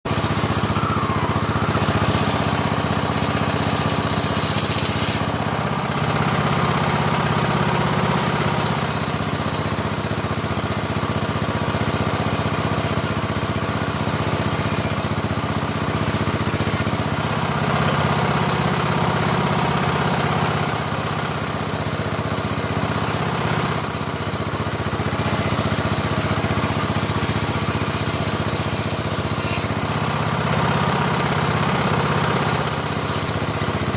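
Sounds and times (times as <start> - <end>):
sawmill engine running: 0.0 - 33.9.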